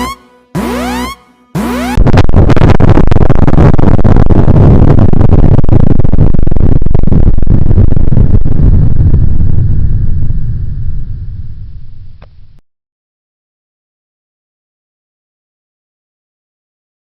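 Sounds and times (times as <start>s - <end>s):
distorted crackling noise: 0.0s - 12.6s
heavy low rumble: 1.6s - 12.6s.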